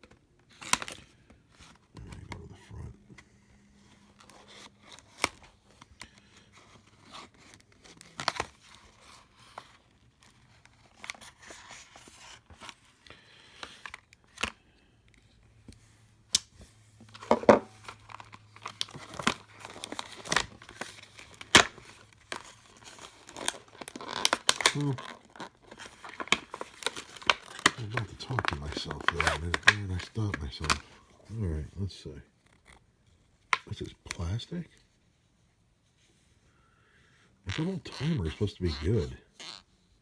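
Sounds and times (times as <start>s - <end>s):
packaging tearing and crinkling: 0.5s - 2.9s, 3.8s - 12.9s, 17.2s - 31.6s.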